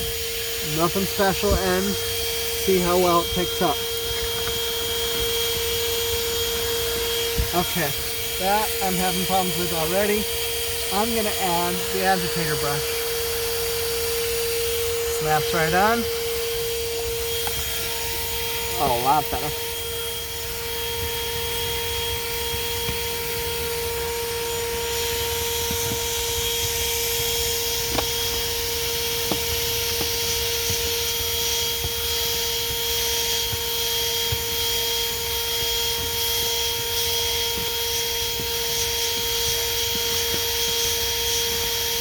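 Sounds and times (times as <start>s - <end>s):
vacuum cleaner whine and hiss: 0.0s - 42.0s.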